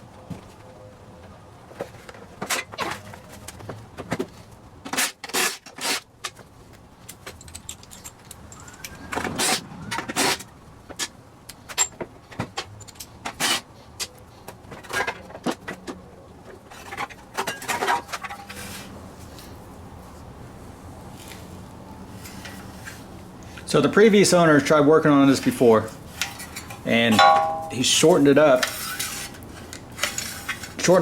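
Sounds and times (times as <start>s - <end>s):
tools clicking and knocking on metal: 7.1s - 8.9s, 26.2s - 28.8s.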